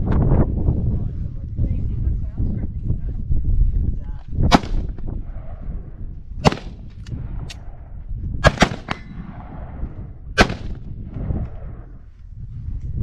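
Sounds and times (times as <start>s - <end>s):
gunshots: 4.5s - 5.6s, 6.4s - 7.8s, 8.4s - 11.3s.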